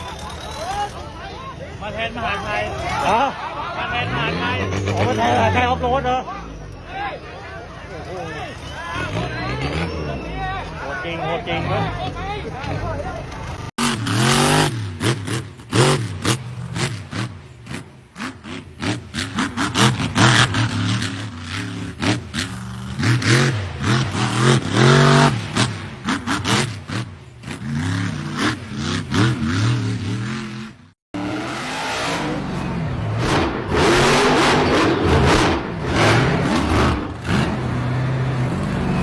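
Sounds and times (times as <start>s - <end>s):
engine running hard: 0.0s - 39.0s
off-road engine revving: 0.0s - 39.0s.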